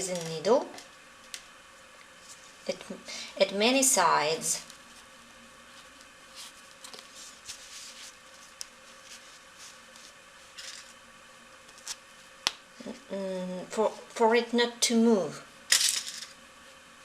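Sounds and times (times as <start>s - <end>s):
soft rustling: 4.6s - 11.0s.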